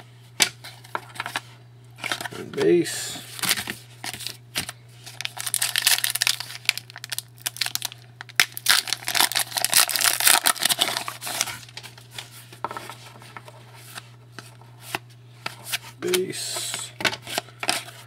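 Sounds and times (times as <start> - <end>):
wrapper crinkling and tearing: 5.0 - 11.9
cards clicking and rustling: 7.5 - 18.0.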